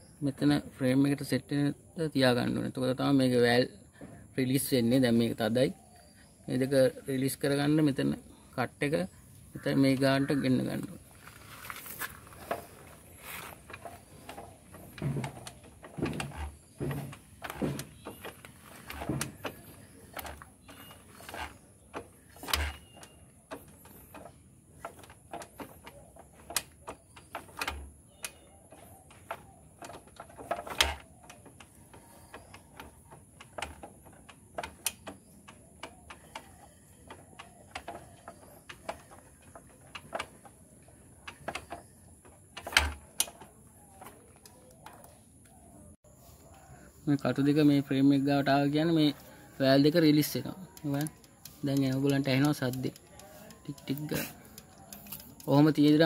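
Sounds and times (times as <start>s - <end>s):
metallic clicks and knocks: 12.0s - 45.7s, 48.7s - 56.0s.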